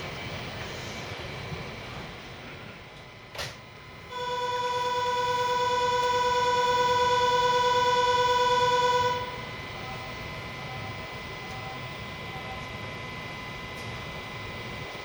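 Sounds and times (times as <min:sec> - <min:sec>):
station departure siren: 0:03.7 - 0:15.0.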